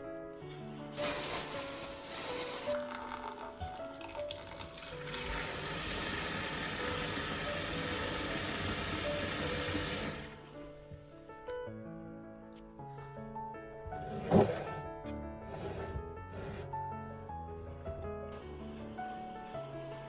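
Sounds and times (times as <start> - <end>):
tap water running into sink: 1.0 - 10.6, 14.0 - 14.8.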